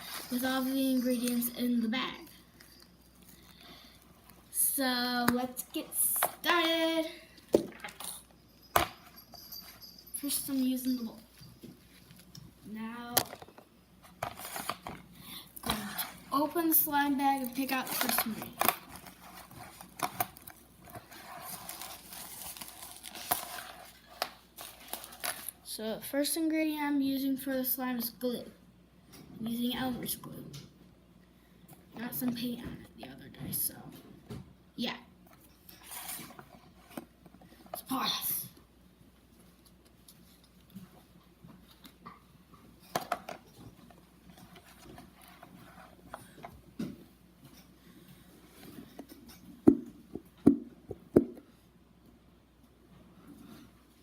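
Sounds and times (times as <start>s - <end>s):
bag rustling and crinkling: 0.0s - 1.5s, 17.2s - 25.6s.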